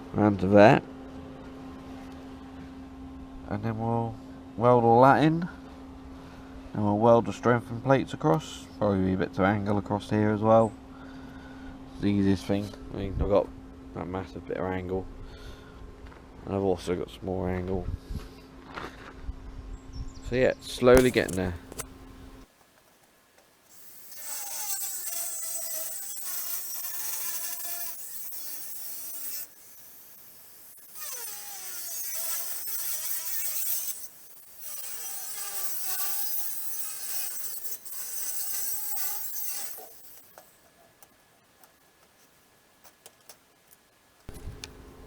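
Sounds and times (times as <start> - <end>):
angle grinder cutting steel: 21.0 - 21.9, 23.7 - 40.6.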